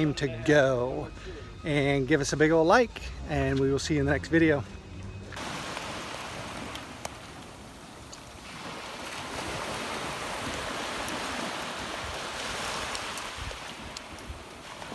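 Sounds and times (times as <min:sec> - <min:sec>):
waves rushing: 0:05.3 - 0:14.9
wind buffeting microphone: 0:05.9 - 0:14.9.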